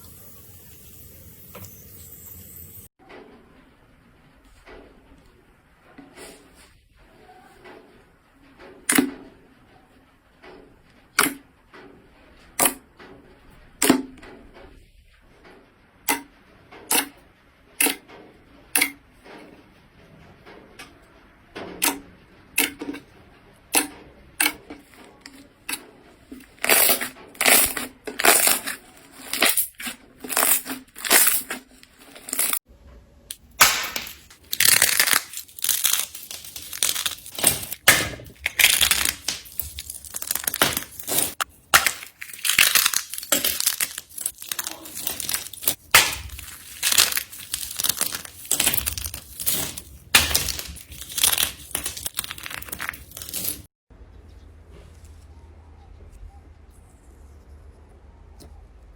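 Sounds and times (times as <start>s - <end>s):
slime snapping and crackling: 33.3s - 53.6s.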